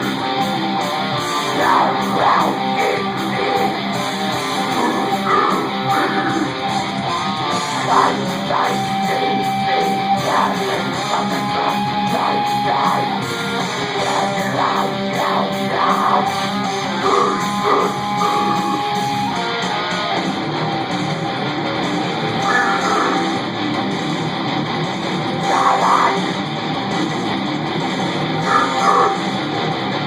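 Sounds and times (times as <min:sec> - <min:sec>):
rock band music: 0:00.0 - 0:30.0
sustained lead guitar notes: 0:00.0 - 0:30.0.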